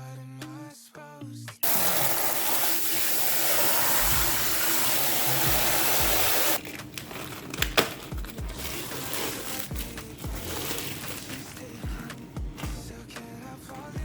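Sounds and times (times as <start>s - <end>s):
blower motor blowing: 1.6s - 6.6s.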